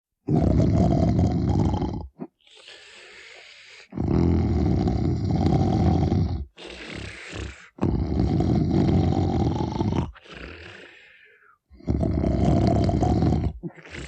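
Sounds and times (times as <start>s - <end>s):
deep snoring: 0.3s - 14.0s
breathy exhale: 2.4s - 4.0s, 6.6s - 7.8s, 10.1s - 11.6s.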